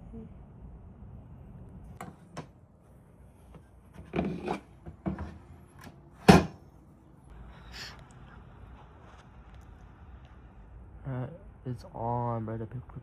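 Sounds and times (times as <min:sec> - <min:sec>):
tools knocking on workbench: 0:04.0 - 0:05.4, 0:06.2 - 0:06.6.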